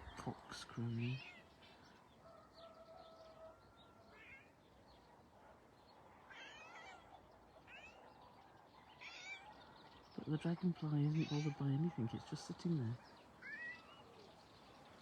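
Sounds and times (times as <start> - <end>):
faint rooster crow: 2.1 - 4.6
cat meowing faintly: 4.1 - 4.6, 6.3 - 7.1.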